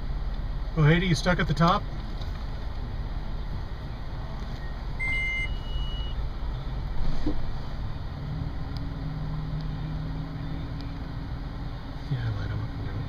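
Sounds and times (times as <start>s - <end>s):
car engine rumble from inside: 0.0s - 13.0s
two-tone electronic beep: 4.6s - 6.2s.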